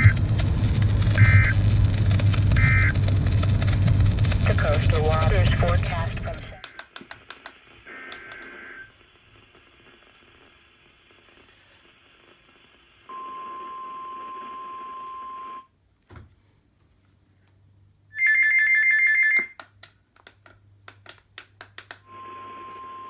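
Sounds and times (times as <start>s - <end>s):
radio static: 0.0s - 7.0s, 7.6s - 13.1s
warning alarm tone: 1.2s - 1.6s, 2.6s - 3.0s
clicks: 4.9s - 8.7s, 19.4s - 22.1s.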